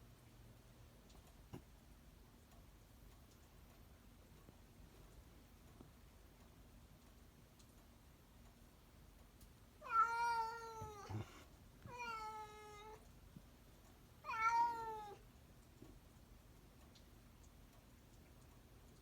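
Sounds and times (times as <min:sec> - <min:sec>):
cat meowing: 0:09.8 - 0:13.0, 0:14.2 - 0:15.2.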